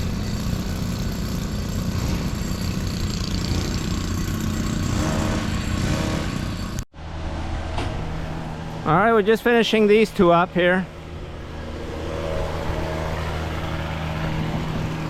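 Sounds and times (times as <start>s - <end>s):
motor engine running: 0.0s - 6.8s
low engine hum: 10.5s - 15.0s.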